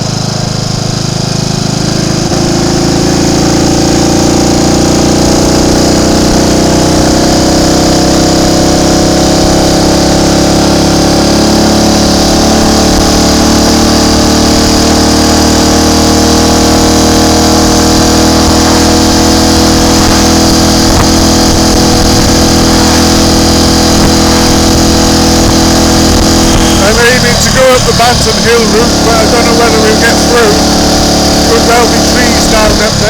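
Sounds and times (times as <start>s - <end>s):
motorcycle engine running steadily: 0.0s - 33.0s.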